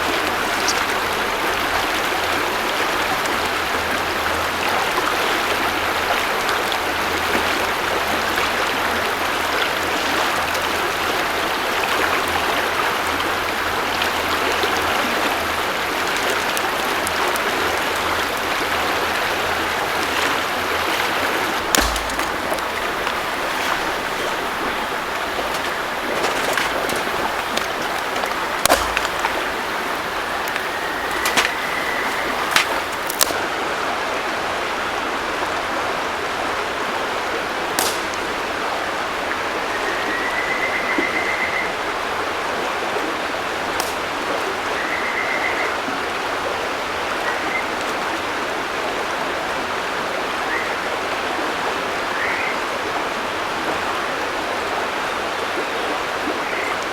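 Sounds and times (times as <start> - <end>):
river water running: 0.0 - 40.4
sharp clicks: 21.7 - 33.4.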